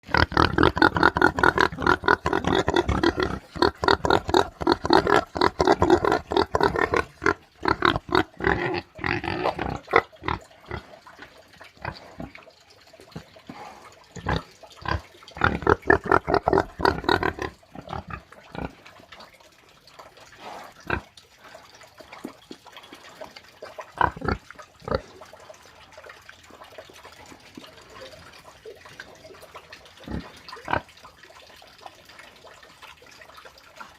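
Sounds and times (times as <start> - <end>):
pig grunting: 0.1 - 10.9, 14.2 - 18.8.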